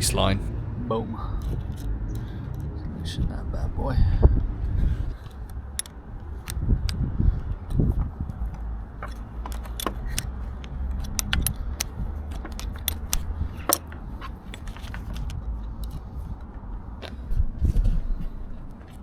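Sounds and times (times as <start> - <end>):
steady low rumble: 0.0 - 19.0
metallic clicks and jingling: 5.2 - 6.6, 8.4 - 16.1.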